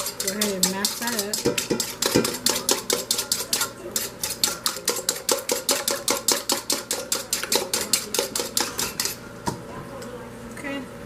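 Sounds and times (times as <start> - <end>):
fork clinking on mixing bowl: 0.0 - 9.2.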